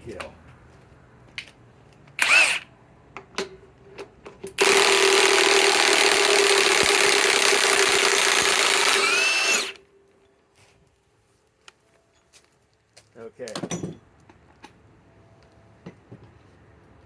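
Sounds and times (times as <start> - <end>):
drill driving bolt into wood: 2.2 - 2.7, 4.6 - 9.8.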